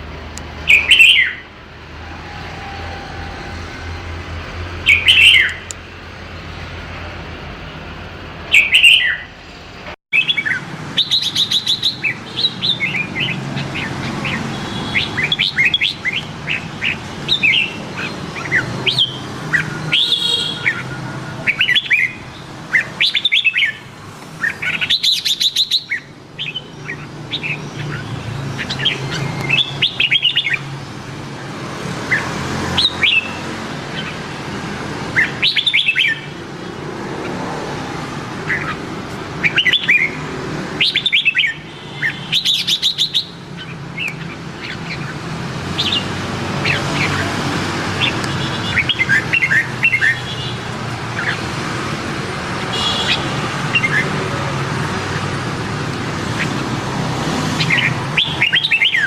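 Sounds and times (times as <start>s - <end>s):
bird chirping: 0.5s - 7.2s, 8.4s - 9.4s, 10.2s - 30.7s, 35.1s - 37.4s, 40.8s - 47.4s, 48.0s - 50.5s, 57.3s - 59.0s.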